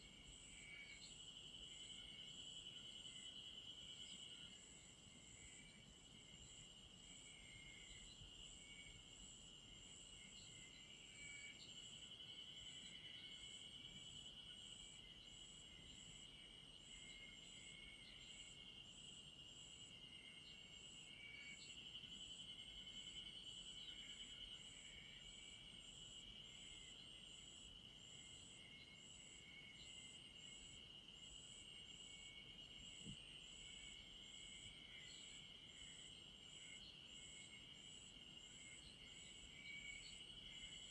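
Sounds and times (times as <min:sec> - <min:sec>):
high insect chirp: 0:00.0 - 0:40.9
low insect chirping: 0:00.0 - 0:40.9.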